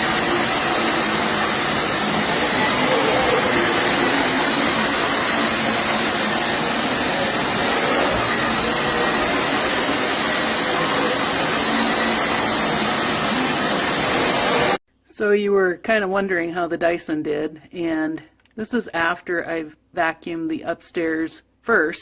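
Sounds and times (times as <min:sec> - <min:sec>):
vacuum cleaner running: 0:00.0 - 0:14.8.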